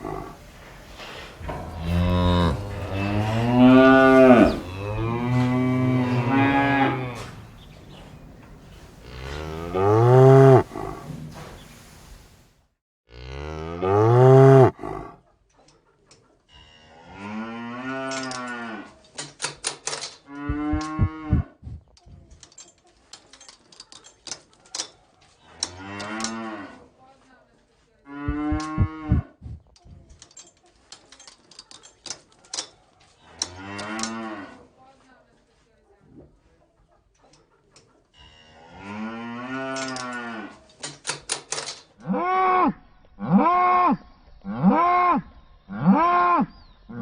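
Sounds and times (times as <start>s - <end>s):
cows mooing: 0.0s - 8.3s, 9.0s - 11.2s, 13.1s - 15.1s, 20.3s - 21.5s, 28.1s - 29.3s.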